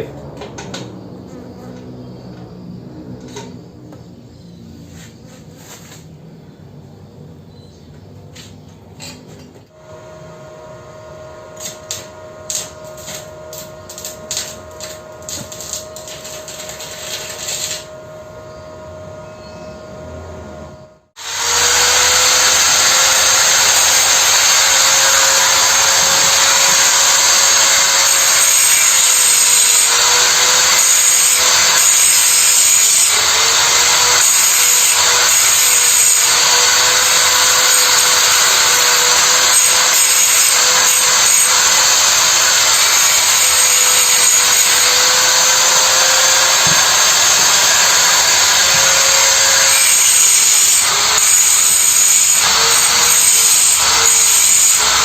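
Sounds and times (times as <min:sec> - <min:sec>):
arc welding hiss: 0:11.6 - 0:17.9.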